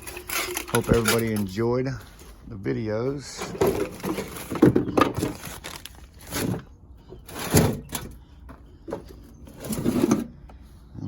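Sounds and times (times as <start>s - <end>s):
junk knocking and clattering: 3.4s - 5.6s.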